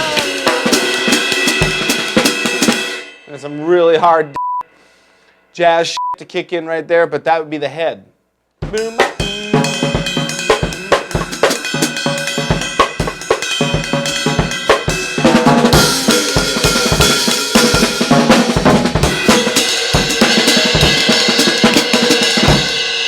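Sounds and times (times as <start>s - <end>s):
drum kit played hard: 0.0s - 3.3s, 8.6s - 23.0s
loud cymbal wash: 0.0s - 3.6s, 8.8s - 23.0s.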